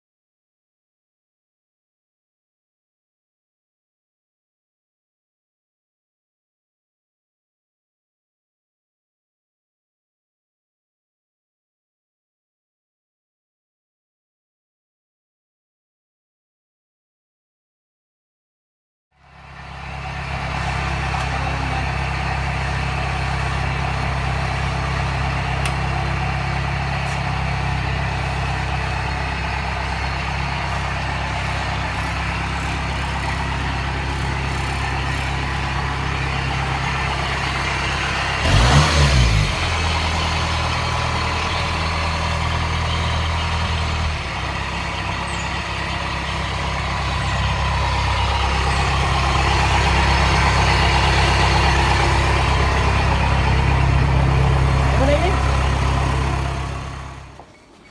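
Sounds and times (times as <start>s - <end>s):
combine harvester engine running: 19.3s - 57.9s.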